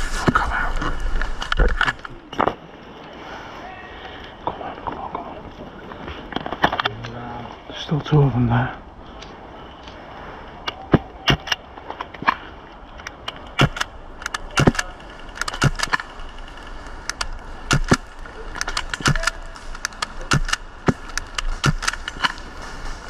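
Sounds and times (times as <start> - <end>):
airsoft guns firing: 13.6 - 16.2, 17.2 - 22.4.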